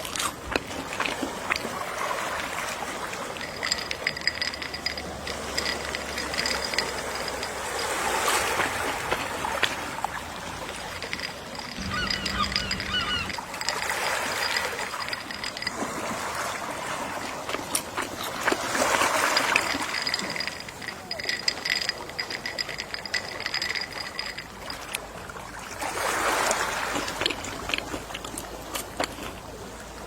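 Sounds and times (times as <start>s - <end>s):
sea waves washing: 0.0s - 30.0s
seagull calls: 11.8s - 13.5s.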